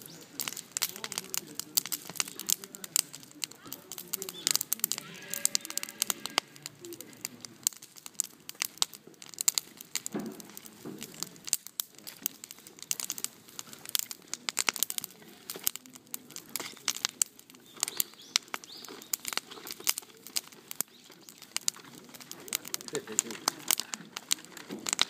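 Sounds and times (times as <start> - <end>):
bonfire crackling and popping: 0.0 - 25.0.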